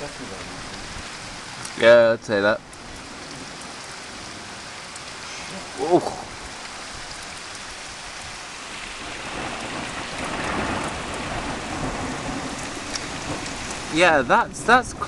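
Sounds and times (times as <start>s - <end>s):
steady rain: 0.0s - 15.0s
thunder rumbling: 8.8s - 15.0s.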